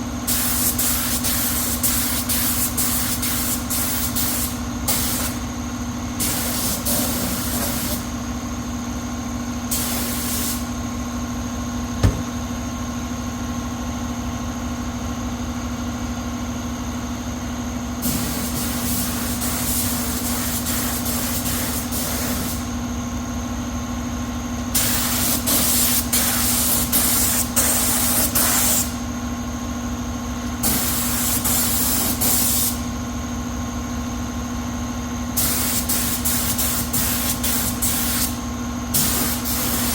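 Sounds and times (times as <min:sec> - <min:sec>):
steady machine hum: 0:05.4 - 0:18.5
compressed air hissing: 0:06.2 - 0:08.1, 0:09.7 - 0:10.8, 0:35.4 - 0:38.4, 0:39.0 - 0:39.9.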